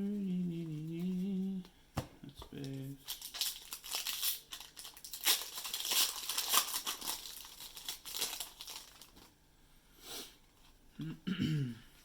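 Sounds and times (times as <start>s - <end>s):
plastic foil wrapper crinkling: 2.6s - 9.3s.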